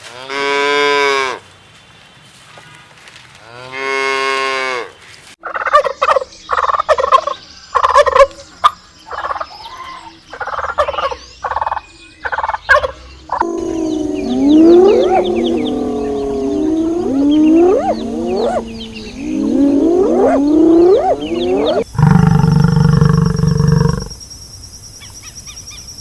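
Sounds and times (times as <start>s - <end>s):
poultry calling: 12.8s - 22.3s
cow mooing: 13.4s - 24.1s.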